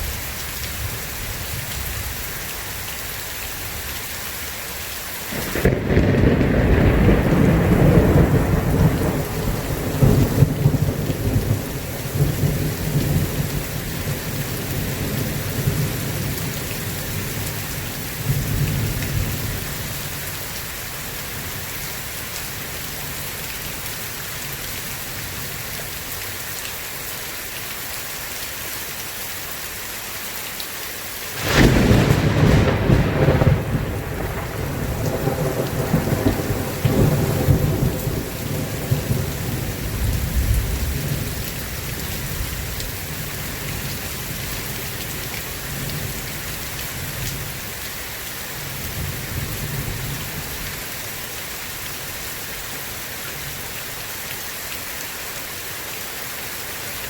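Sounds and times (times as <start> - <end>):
heavy rain: 0.0 - 57.0
loud thunderclap: 5.4 - 13.7, 31.4 - 41.3
rolling thunder: 5.4 - 17.4, 31.4 - 41.4.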